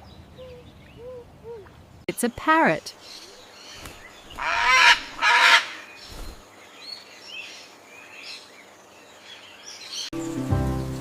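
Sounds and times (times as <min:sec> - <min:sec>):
small birds chirping: 0:00.0 - 0:11.0
music: 0:10.1 - 0:11.0.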